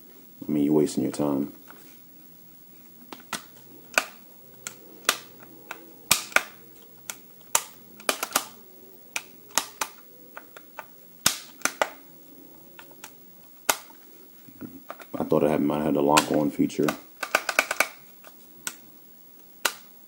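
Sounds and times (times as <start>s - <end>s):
plastic and metal clicks: 3.1s - 8.6s, 9.2s - 12.0s, 16.2s - 18.8s.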